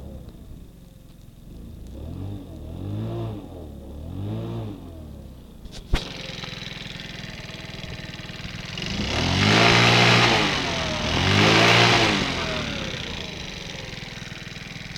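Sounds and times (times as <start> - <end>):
engine idling and revving: 0.0 - 14.9
sharp click: 5.6 - 6.6.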